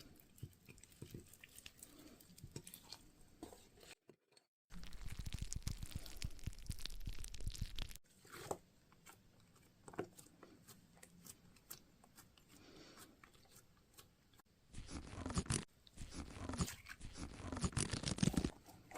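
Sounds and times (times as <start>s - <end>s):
slime crackling and popping: 4.7s - 8.0s.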